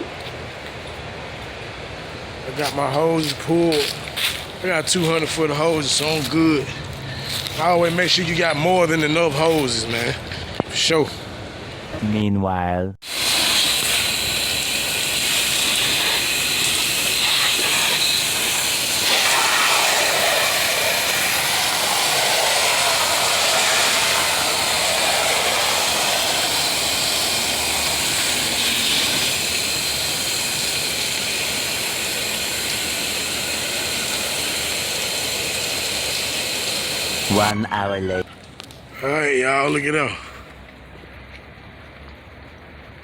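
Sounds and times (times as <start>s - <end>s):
pressure washer spraying: 13.0s - 37.3s.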